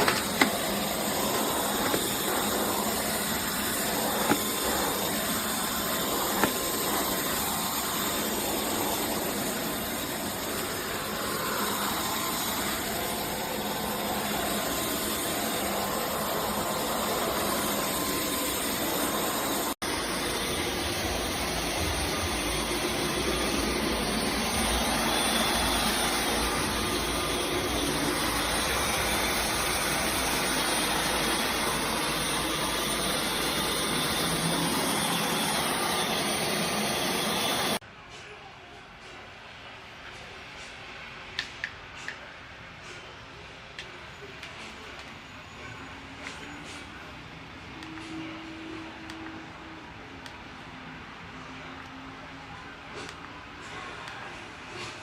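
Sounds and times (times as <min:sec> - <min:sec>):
vacuum cleaner whooshing hiss: 0:00.0 - 0:37.8.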